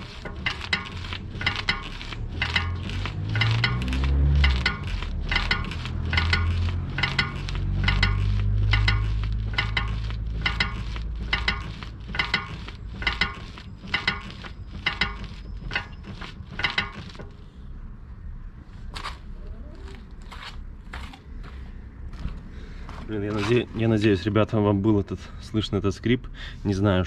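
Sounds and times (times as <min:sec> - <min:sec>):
high-pitched steering squeaks: 0:00.0 - 0:17.6
low hum: 0:00.0 - 0:22.2.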